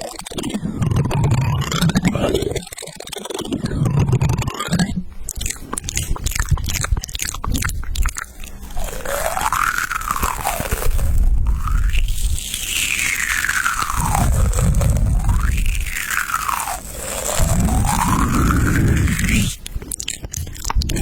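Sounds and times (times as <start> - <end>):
rapid dense crunching: 5.3 - 21.0.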